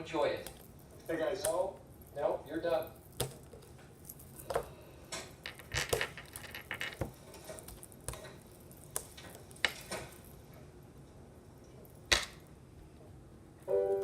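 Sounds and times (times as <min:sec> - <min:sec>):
sticky slime squelches: 0:00.0 - 0:05.4.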